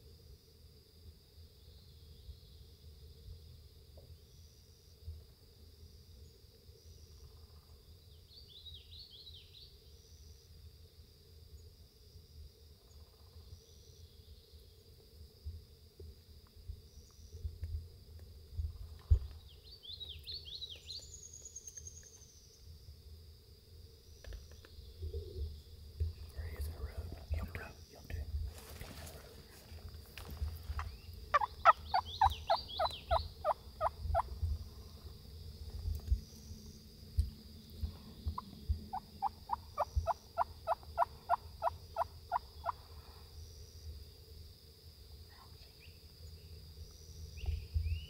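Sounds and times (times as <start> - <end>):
insect hum: 0.0 - 48.0
songbird singing: 1.4 - 5.2, 5.8 - 10.7, 11.4 - 23.0, 23.8 - 44.3, 45.3 - 48.0
turkey call yelping: 31.3 - 34.3.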